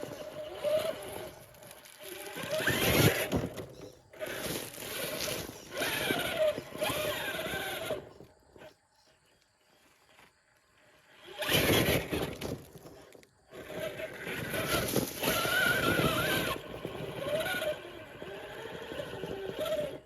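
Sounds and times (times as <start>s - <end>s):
electric drivetrain whining: 0.0s - 20.0s.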